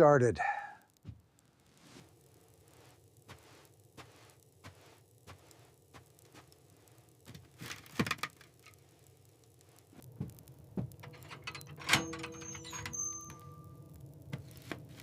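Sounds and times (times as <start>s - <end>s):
sharp metallic clank ringing: 11.6s - 13.7s.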